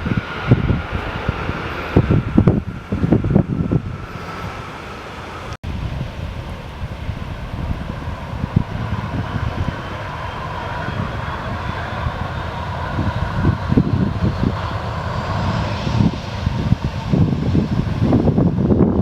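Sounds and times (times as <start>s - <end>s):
jet engines whining: 0.0s - 19.0s
wind buffeting microphone: 0.0s - 19.0s
low rumble: 5.6s - 19.0s.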